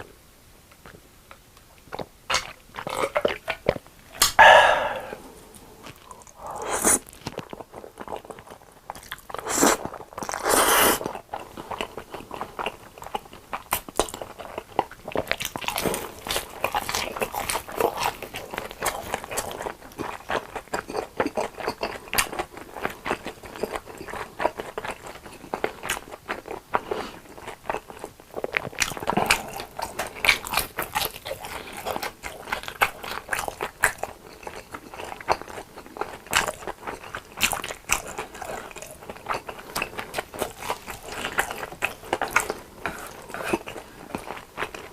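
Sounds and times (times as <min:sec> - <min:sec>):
crunchy chewing: 0:01.9 - 0:44.9.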